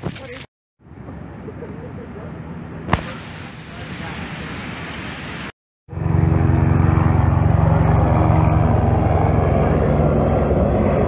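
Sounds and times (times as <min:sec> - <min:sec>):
engine running steadily: 0:05.9 - 0:11.0.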